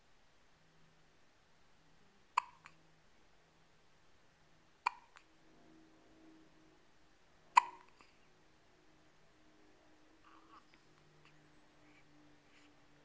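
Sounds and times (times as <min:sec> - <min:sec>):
baby hiccuping: 0:02.3 - 0:02.8, 0:04.8 - 0:05.3, 0:07.5 - 0:08.2.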